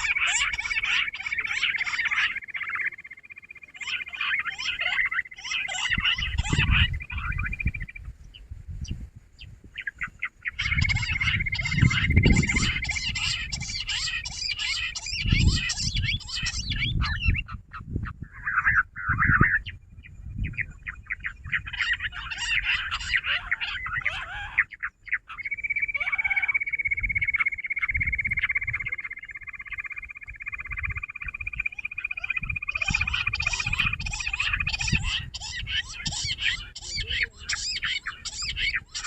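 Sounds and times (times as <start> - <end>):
quails chattering calls: 0.0 - 39.0.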